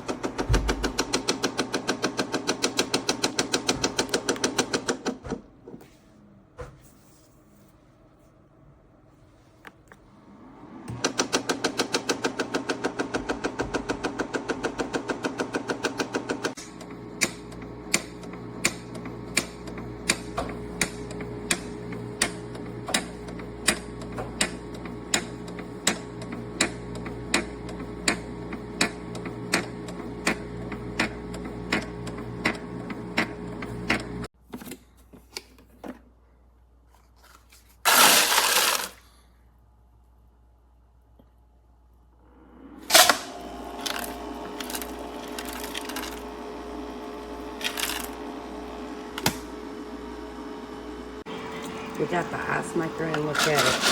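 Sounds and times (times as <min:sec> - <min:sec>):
ice maker humming: 0:10.1 - 0:34.3, 0:37.8 - 0:39.1, 0:42.2 - 0:53.9
ice maker clicking: 0:42.9 - 0:46.5, 0:47.1 - 0:48.3.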